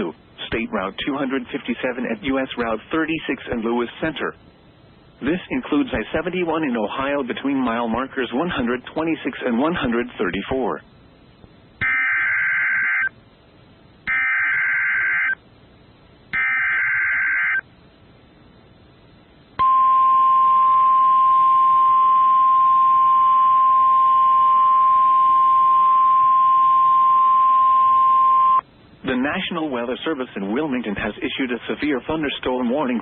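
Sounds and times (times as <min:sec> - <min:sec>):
screechy digital data tones: 0:11.8 - 0:13.2, 0:14.1 - 0:15.4, 0:16.4 - 0:17.6.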